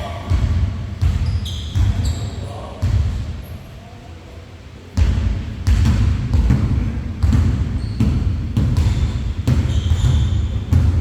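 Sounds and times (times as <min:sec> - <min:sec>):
basketball bouncing on gym floor: 0:00.3 - 0:02.2, 0:02.8 - 0:03.3, 0:05.0 - 0:11.0.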